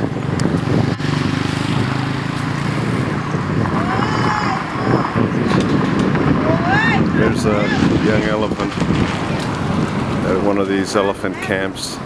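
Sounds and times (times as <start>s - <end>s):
vehicle engine running: 0.0s - 6.5s
wind buffeting microphone: 0.0s - 12.0s
faint voice: 3.7s - 5.3s.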